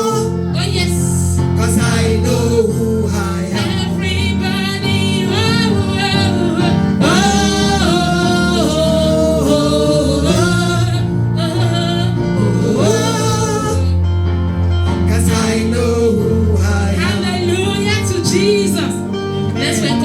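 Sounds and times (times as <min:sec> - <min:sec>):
congregation singing: 0:00.0 - 0:20.0
band accompaniment: 0:03.5 - 0:16.4.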